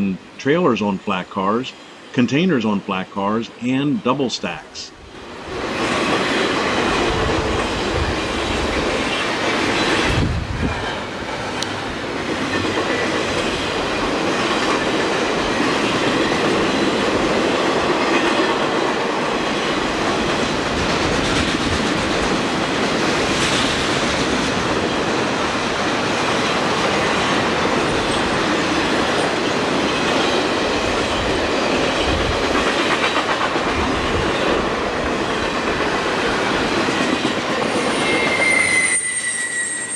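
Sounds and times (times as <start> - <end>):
freight train rolling past: 5.0 - 39.9
wheels clicking over rail joints: 5.6 - 25.1.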